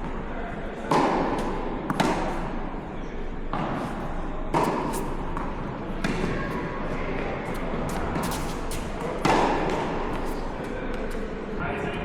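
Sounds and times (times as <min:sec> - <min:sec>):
court background noise: 0:00.0 - 0:12.0.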